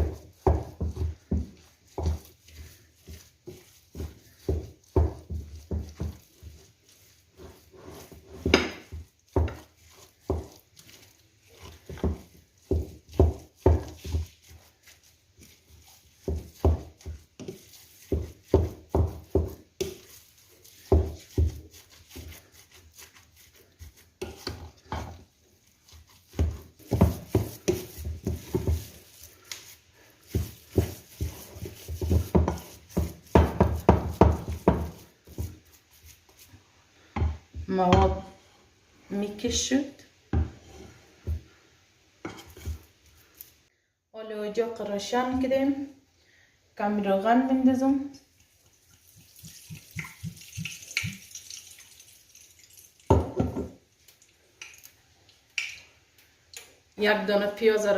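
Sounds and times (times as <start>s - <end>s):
hands squelching meat mixture: 0.0s - 40.1s, 47.5s - 53.2s.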